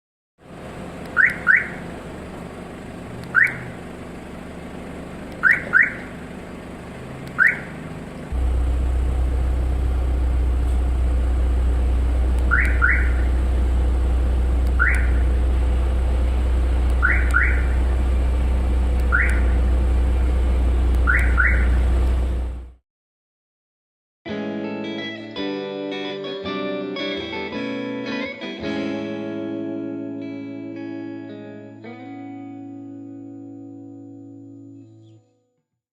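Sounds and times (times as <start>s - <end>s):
car alarm siren chirping: 1.0s - 1.9s, 3.3s - 3.8s, 5.3s - 6.2s, 7.3s - 7.8s, 12.4s - 13.4s, 14.6s - 15.4s, 16.9s - 17.9s, 19.0s - 19.6s, 21.0s - 21.9s
low rumble: 8.3s - 22.8s.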